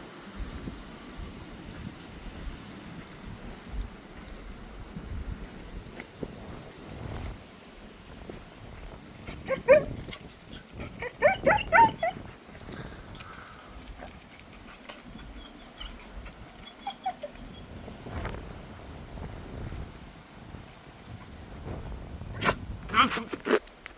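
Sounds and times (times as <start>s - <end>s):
dog yipping: 9.4s - 10.1s, 10.9s - 12.2s, 15.0s - 17.8s.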